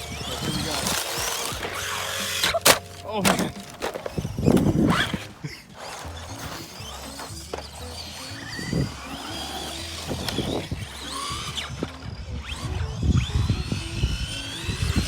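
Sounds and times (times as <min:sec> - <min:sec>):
car banging over hard ground: 0:00.0 - 0:07.9
toy car electric motor whining: 0:00.0 - 0:15.0.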